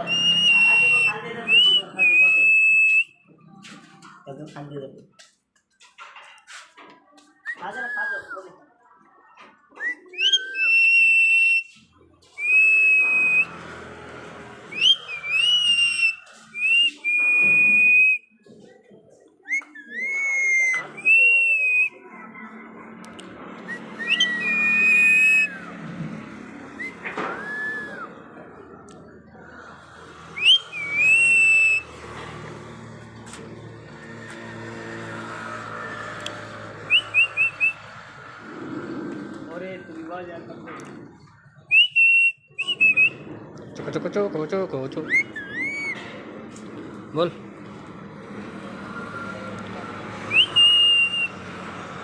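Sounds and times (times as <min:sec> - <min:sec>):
parrot whistling: 0:00.0 - 0:03.1, 0:09.8 - 0:11.8, 0:12.4 - 0:13.6, 0:14.7 - 0:18.2, 0:19.5 - 0:22.0, 0:23.7 - 0:25.7, 0:26.8 - 0:28.2, 0:30.4 - 0:31.9, 0:35.8 - 0:38.0, 0:41.6 - 0:43.3, 0:45.0 - 0:46.1, 0:50.3 - 0:51.5.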